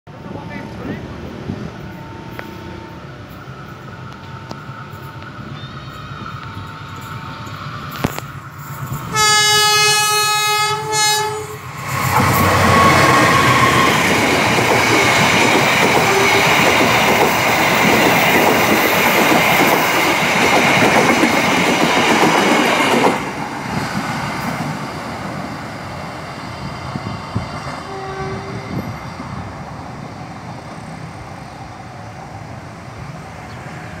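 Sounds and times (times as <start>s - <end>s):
train wheels rumbling on rails: 0.1s - 34.0s
train horn blast: 9.1s - 11.7s, 16.0s - 16.6s, 27.8s - 29.0s.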